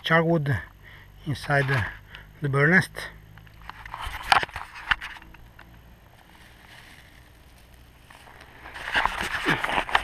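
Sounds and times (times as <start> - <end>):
low outdoor rumble: 0.0 - 10.0
dry tinder rustling and crackling: 3.6 - 10.0.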